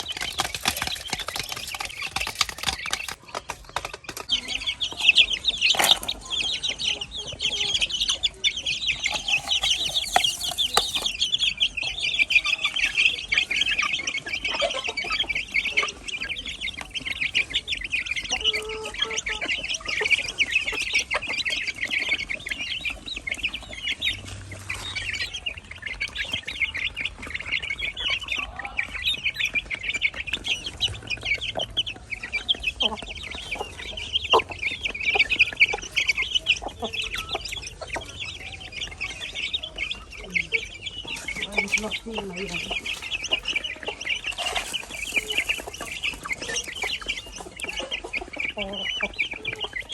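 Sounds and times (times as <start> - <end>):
chickens clucking: 0.0 - 49.9.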